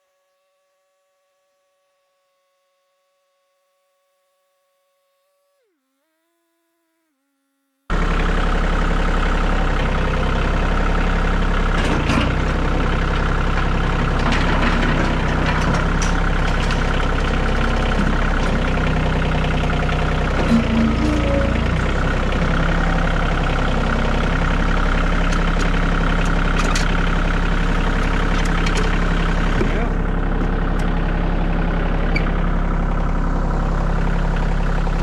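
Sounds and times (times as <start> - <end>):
tractor engine running: 7.9 - 35.0.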